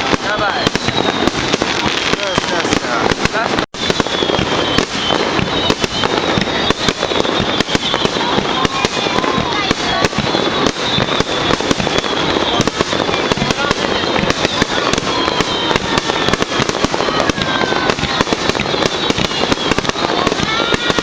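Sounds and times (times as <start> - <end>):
firework whistling: 0.0 - 21.0
fireworks bangs and crackling: 0.0 - 21.0.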